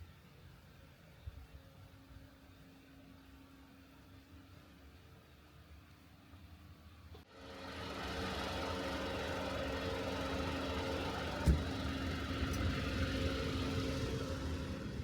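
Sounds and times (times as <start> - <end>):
car engine humming: 7.4 - 15.0
thump: 11.4 - 11.8.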